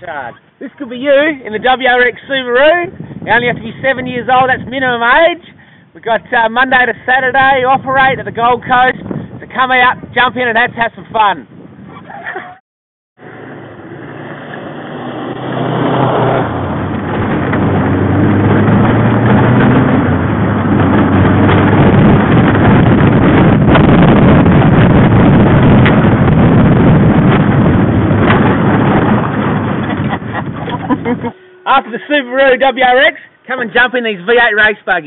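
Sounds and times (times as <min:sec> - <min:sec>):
car engine driven hard: 0:13.2 - 0:30.9
sharp knocks: 0:28.2 - 0:30.0.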